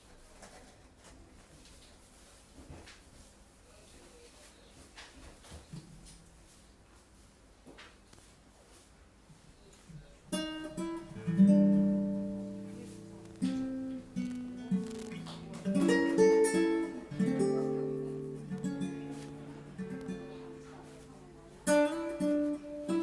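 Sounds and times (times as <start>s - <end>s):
acoustic guitar music: 10.3s - 23.0s.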